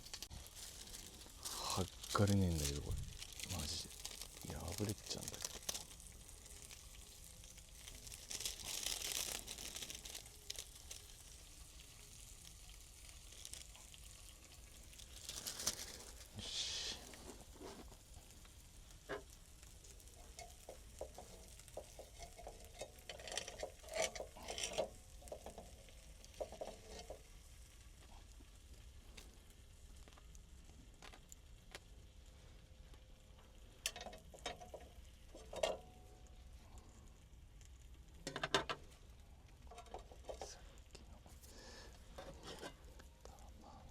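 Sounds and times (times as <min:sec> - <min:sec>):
food sizzling in a pan: 0:00.0 - 0:43.9
utensils clicking and scraping: 0:20.2 - 0:27.2.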